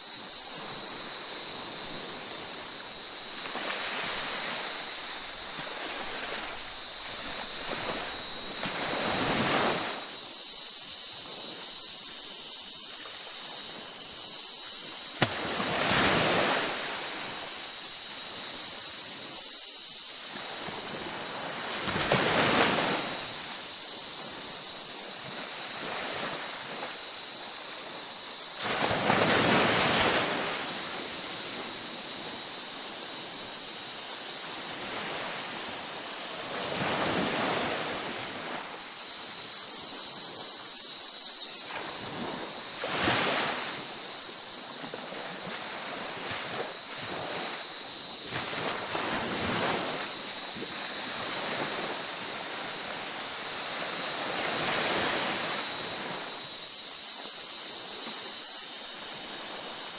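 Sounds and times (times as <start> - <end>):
steady high hiss: 0.0 - 59.9
ocean waves breaking: 0.7 - 10.2, 13.6 - 19.4, 20.3 - 31.6.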